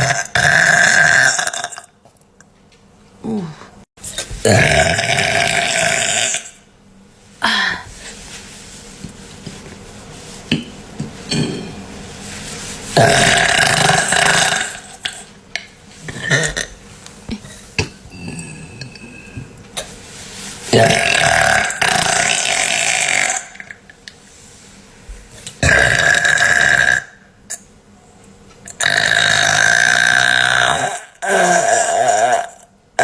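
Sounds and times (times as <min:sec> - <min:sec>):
woman burping loudly: 0:00.0 - 0:01.9, 0:04.5 - 0:06.6, 0:13.0 - 0:15.2, 0:16.1 - 0:16.8, 0:25.6 - 0:27.2, 0:28.8 - 0:32.7.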